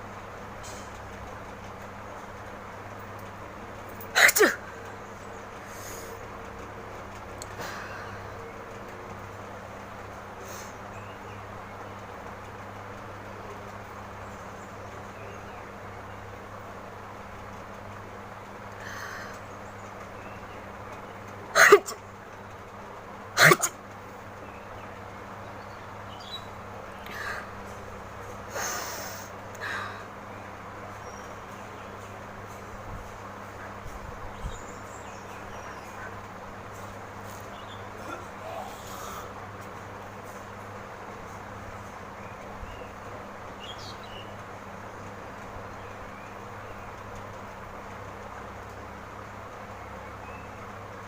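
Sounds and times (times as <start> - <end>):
room noise hum and hiss: 0.0 - 51.0
woman sneezing: 4.2 - 4.6, 21.6 - 22.0
soft breathy sounds: 38.0 - 39.4.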